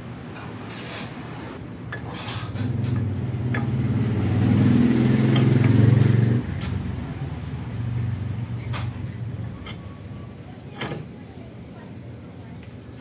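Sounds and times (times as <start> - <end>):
vehicle engine running: 2.6 - 10.2.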